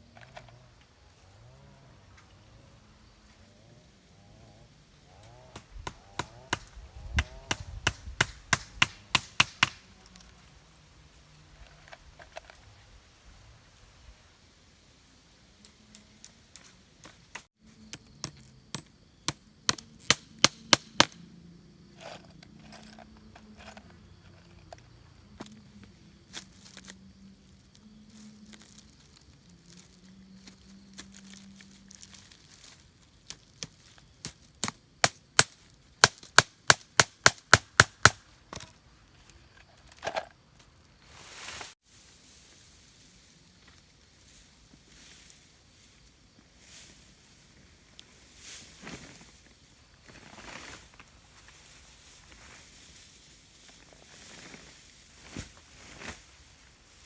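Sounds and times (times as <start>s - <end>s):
sharp chopping strikes: 5.5s - 9.9s, 18.2s - 21.2s, 34.6s - 38.2s.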